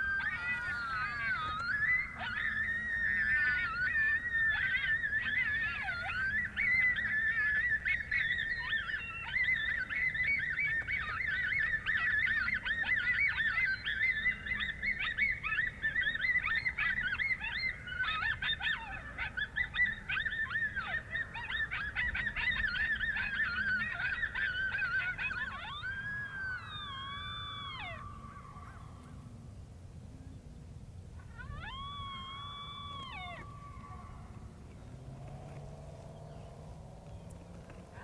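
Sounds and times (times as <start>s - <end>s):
coyote howl: 0.0s - 29.6s, 31.2s - 38.0s
coyotes yipping: 0.0s - 29.6s, 31.0s - 38.0s.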